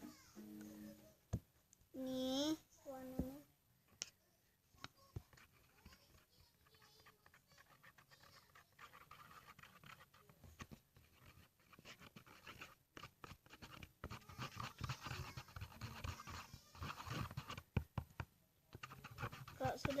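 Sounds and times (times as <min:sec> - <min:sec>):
stirrer scraping plastic container: 0:05.1 - 0:18.2, 0:18.8 - 0:20.0.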